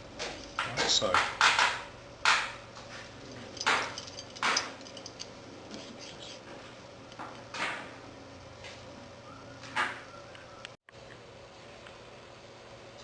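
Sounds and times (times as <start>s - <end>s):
metal clinks and scrapes: 3.0s - 5.4s.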